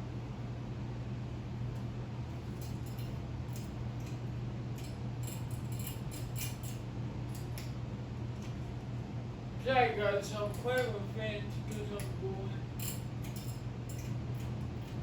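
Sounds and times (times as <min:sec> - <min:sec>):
ceiling fan motor hum: 0:00.0 - 0:15.0
light ticks and clinks: 0:02.5 - 0:07.8, 0:12.8 - 0:15.0.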